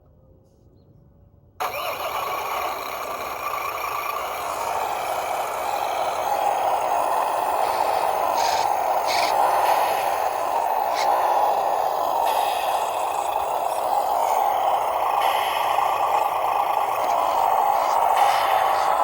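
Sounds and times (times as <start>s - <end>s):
simulated truck engine: 1.6s - 19.0s
short hissy bursts: 4.2s - 19.0s.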